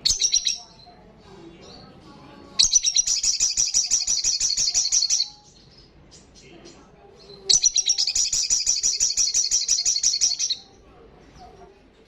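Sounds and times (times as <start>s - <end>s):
faint high bird chirps: 0.0s - 1.0s, 2.6s - 10.8s
bird rapid high trill: 2.6s - 5.4s, 7.5s - 10.6s.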